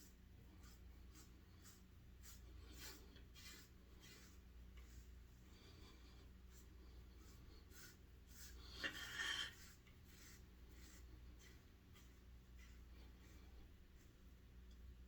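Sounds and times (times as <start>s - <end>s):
razor scraping stubble: 7.1s - 13.8s.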